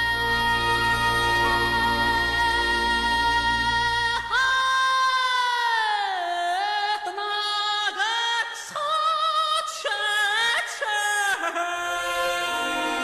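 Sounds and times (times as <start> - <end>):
lower musical accompaniment: 0.0 - 4.4, 11.9 - 13.0.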